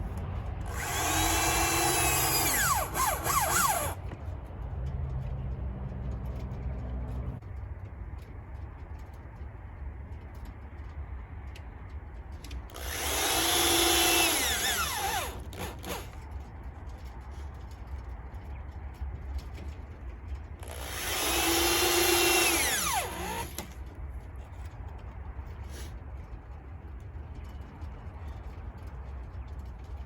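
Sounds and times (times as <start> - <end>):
power drill running: 0.6 - 4.1, 12.7 - 16.2, 20.6 - 23.8.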